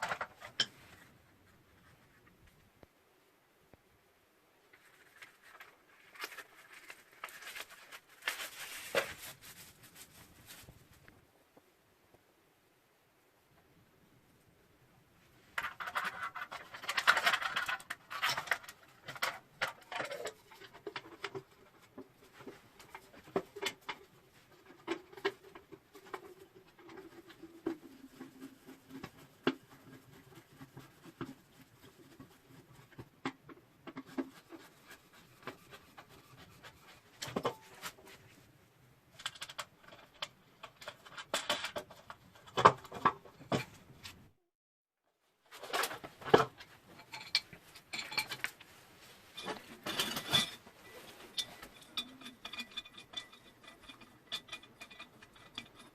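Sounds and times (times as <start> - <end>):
packaging rustling: 4.8 - 11.0.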